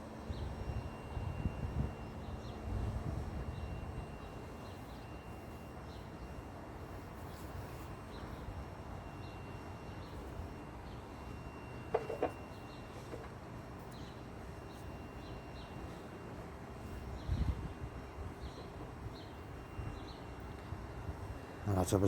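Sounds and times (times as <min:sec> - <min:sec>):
wind rumble on microphone: 0:00.3 - 0:04.1, 0:17.1 - 0:18.0.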